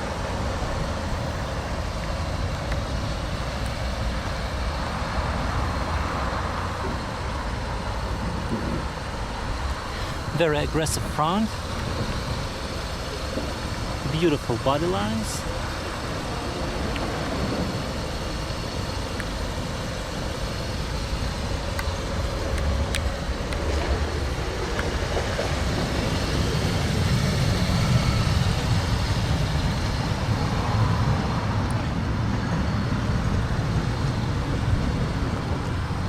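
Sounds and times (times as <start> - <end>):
motor vehicle rumble with hiss: 0.0 - 36.0.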